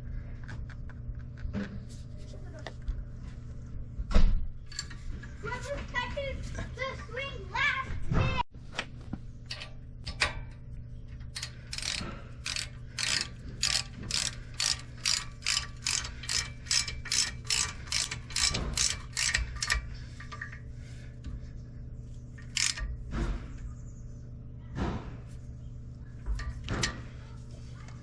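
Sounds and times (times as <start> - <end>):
ratchet wrench clicking: 11.3 - 20.6, 22.4 - 23.0.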